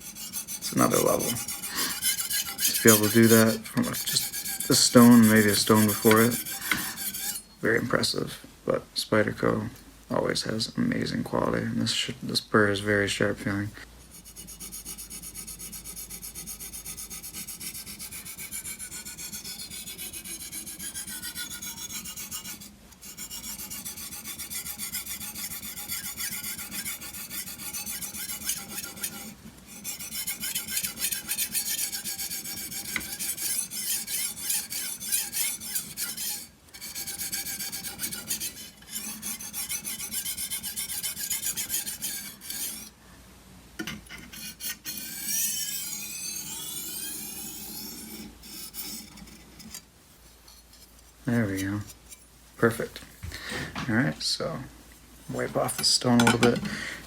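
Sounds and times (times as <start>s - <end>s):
knife scraping on sharpening stone: 0.0s - 7.6s, 14.1s - 42.9s, 43.8s - 49.8s.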